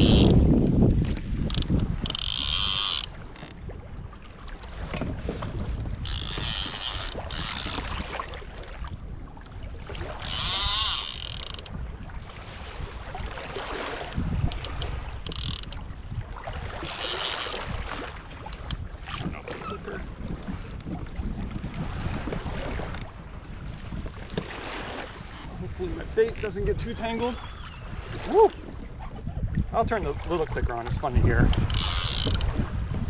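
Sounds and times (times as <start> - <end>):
fishing reel ratcheting whir: 0.0 - 0.4, 1.4 - 3.6, 6.0 - 7.9, 10.2 - 11.8, 14.5 - 15.8, 16.8 - 17.7, 27.3 - 28.2, 31.5 - 32.5
water noise: 0.0 - 33.0
wind: 0.0 - 33.0.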